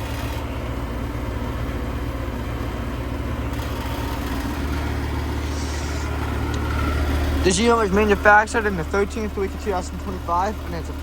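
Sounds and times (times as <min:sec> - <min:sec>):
heat pump low hum: 0:00.0 - 0:11.0.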